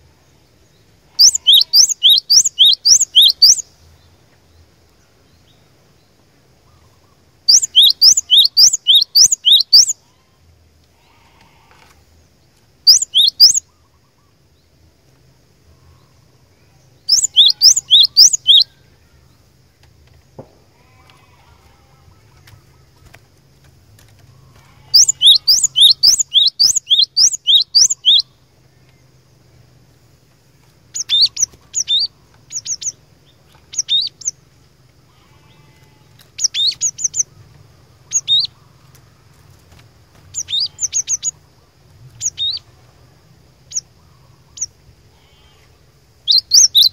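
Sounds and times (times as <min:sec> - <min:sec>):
bird singing high sweeping notes: 0:01.2 - 0:03.7, 0:07.5 - 0:10.0, 0:12.9 - 0:13.8, 0:17.0 - 0:18.9, 0:25.0 - 0:28.3.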